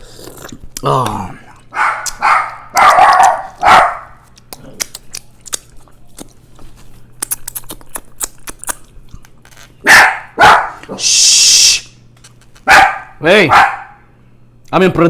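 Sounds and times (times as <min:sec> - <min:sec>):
chewing with mouth clicks: 0:00.0 - 0:09.8
dog barking: 0:01.7 - 0:04.2, 0:09.8 - 0:11.0, 0:12.6 - 0:14.0.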